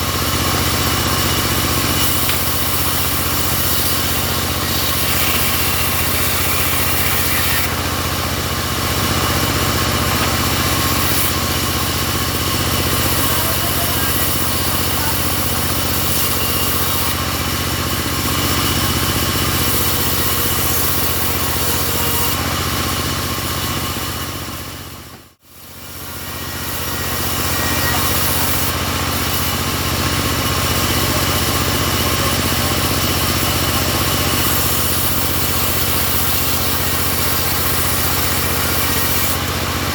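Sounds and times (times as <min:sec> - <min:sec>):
bandsaw sawmill engine running: 0:00.0 - 0:39.9.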